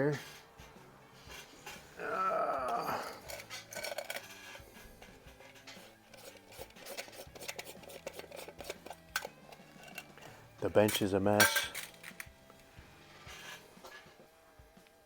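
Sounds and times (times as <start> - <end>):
hands handling rifle parts: 3.2 - 12.7.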